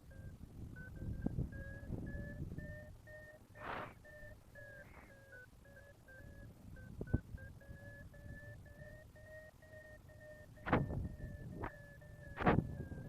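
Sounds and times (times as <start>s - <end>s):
variometer beeping: 0.0s - 13.0s
sharp click: 10.6s - 11.0s.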